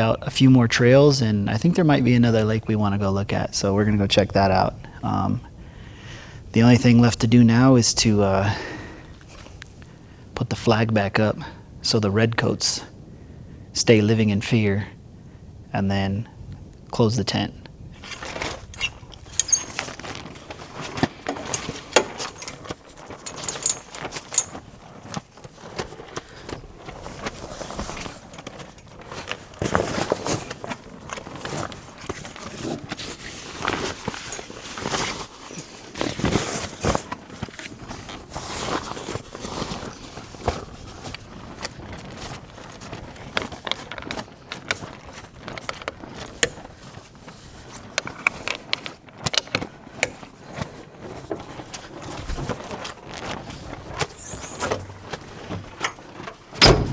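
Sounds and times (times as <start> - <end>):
knocks and clicks of gear: 18.0 - 25.2, 54.6 - 56.9
fabric rustling: 18.0 - 43.6, 50.2 - 56.9
footsteps: 54.0 - 56.9.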